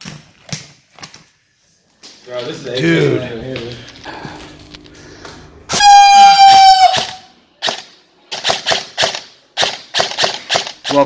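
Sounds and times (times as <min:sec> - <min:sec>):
air horn blast: 0:05.0 - 0:07.4
airsoft guns firing: 0:05.7 - 0:11.0.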